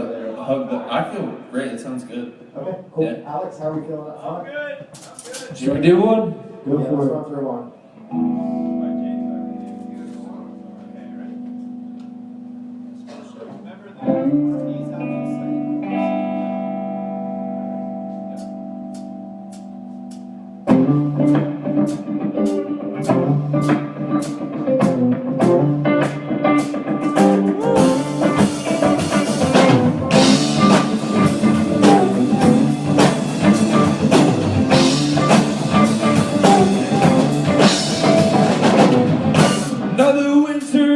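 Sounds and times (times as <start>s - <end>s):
rock band playing live: 8.0s - 13.4s, 14.0s - 40.9s.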